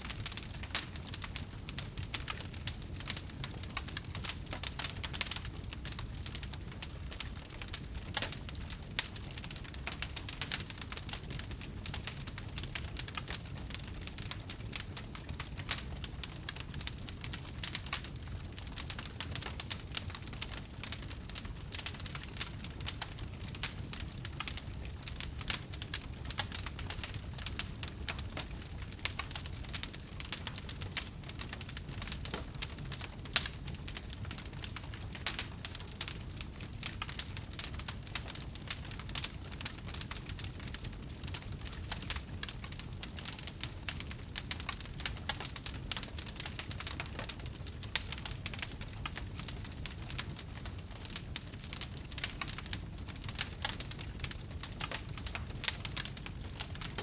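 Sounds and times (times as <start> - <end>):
burning wood crackling and popping: 0.0 - 57.0
low rumble of flames: 0.0 - 57.0.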